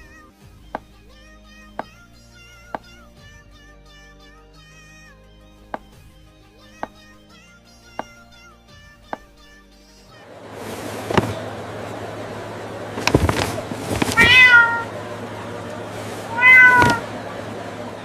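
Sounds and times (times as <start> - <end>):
cat meowing: 14.0 - 14.9, 16.3 - 17.1.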